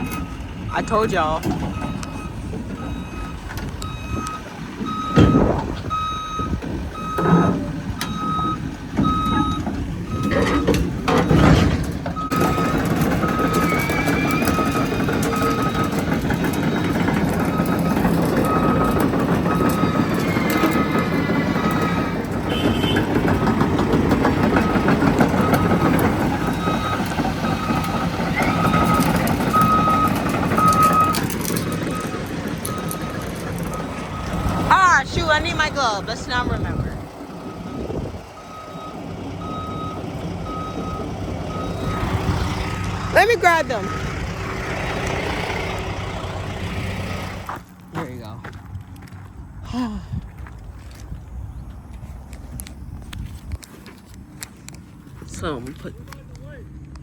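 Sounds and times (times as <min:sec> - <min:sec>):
backup alarm beeping: 0:00.0 - 0:44.2
machine engine running: 0:12.2 - 0:37.6.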